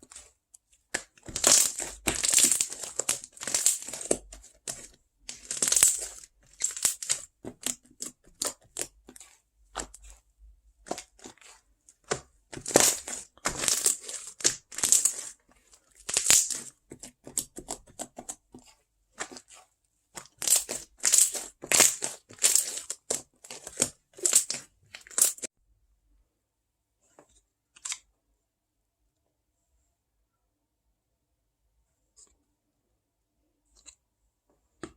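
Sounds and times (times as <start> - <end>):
crinkling and tearing: 1.0 - 10.1, 10.8 - 17.8, 20.2 - 25.5.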